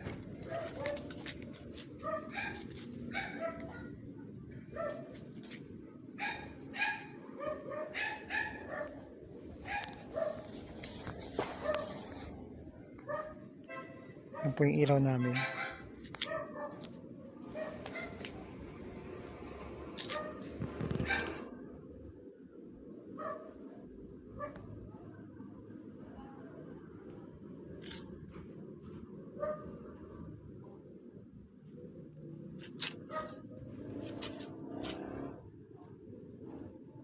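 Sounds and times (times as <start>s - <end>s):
dog barking: 0.4s - 1.2s, 2.0s - 4.0s, 4.7s - 5.1s, 6.2s - 9.0s, 9.6s - 10.4s, 11.6s - 12.0s, 13.0s - 14.6s, 15.2s - 16.9s, 17.5s - 18.3s, 23.2s - 23.6s, 24.4s - 24.6s, 29.4s - 29.8s, 33.1s - 33.4s.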